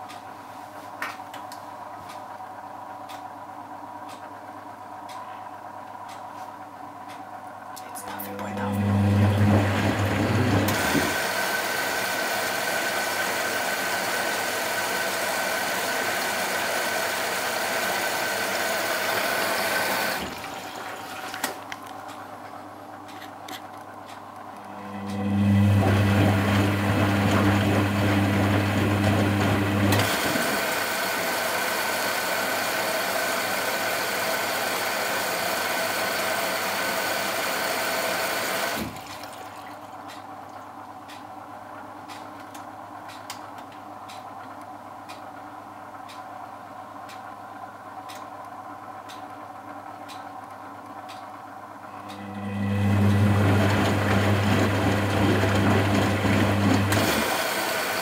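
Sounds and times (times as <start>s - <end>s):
water rushing into washing machine: 8.8s - 21.7s, 24.8s - 40.0s, 52.2s - 58.0s.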